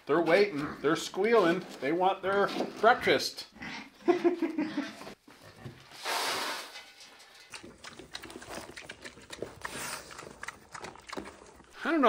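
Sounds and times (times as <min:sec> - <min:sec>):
pigs chomping wetly: 0:07.4 - 0:12.0.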